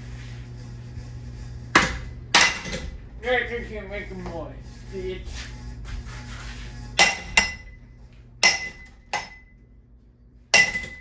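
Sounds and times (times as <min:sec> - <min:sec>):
metal strikes on ceiling fan: 0:01.7 - 0:03.0, 0:07.0 - 0:07.8, 0:08.4 - 0:09.6, 0:10.6 - 0:11.0.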